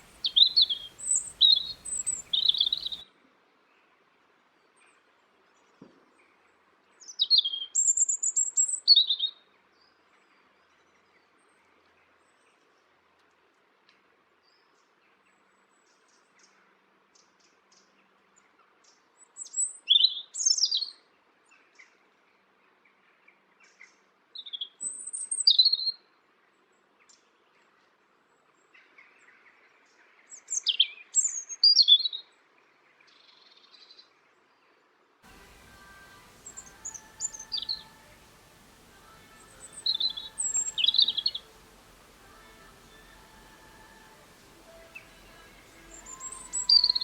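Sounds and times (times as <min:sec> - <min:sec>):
songbird singing high notes: 0:00.0 - 0:03.0, 0:35.3 - 0:47.0.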